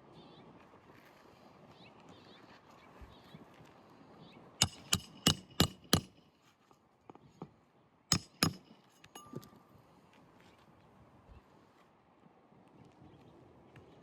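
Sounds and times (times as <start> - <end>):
hammer striking nails: 4.6 - 6.2, 8.1 - 9.5.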